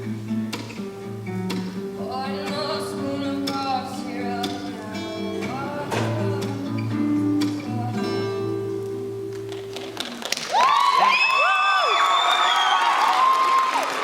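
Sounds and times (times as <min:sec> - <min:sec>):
guitar chords ringing: 0:00.0 - 0:10.0
audience applause: 0:09.8 - 0:14.0
audience cheering and whooping: 0:10.3 - 0:14.0.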